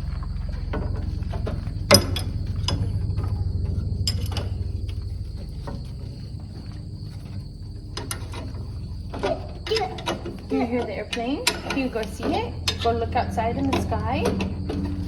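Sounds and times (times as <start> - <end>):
high insect tone: 0.0 - 15.0
steady low hum: 0.0 - 15.0.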